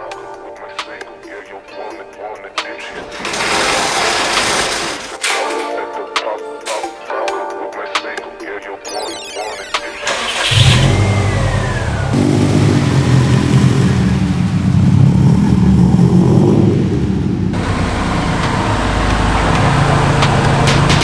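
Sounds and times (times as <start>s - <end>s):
car engine revving: 2.8s - 5.2s, 10.0s - 21.0s.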